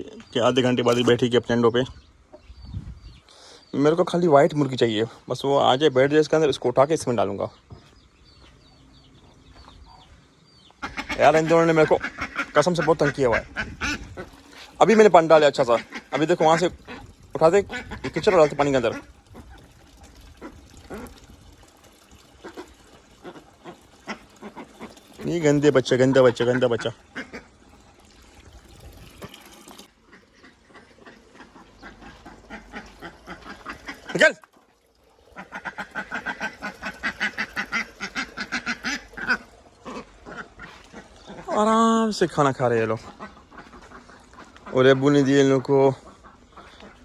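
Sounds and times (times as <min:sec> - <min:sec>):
ducks quacking: 0:04.9 - 0:21.4, 0:22.0 - 0:27.8, 0:29.9 - 0:34.4, 0:35.2 - 0:47.0
poultry splashing in water dish: 0:10.8 - 0:47.0.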